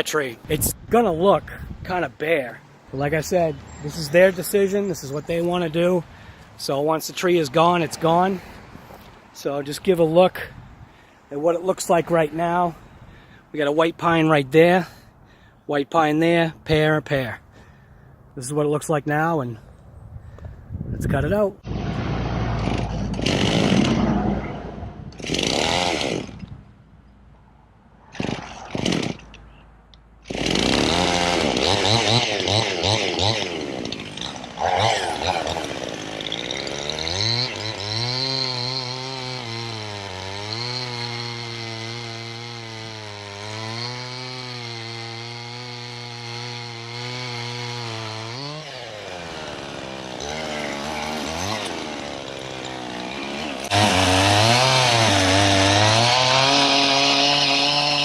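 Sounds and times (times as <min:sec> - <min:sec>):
chainsaw cutting wood: 0:21.6 - 0:26.6, 0:28.1 - 0:29.4, 0:30.2 - 0:58.0.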